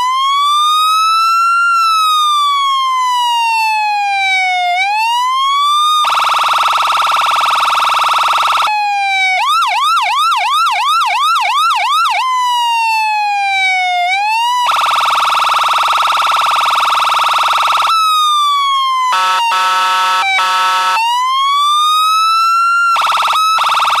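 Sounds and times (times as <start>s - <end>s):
ambulance siren: 0.0s - 24.0s
low buzzing horn blasts: 19.1s - 21.1s.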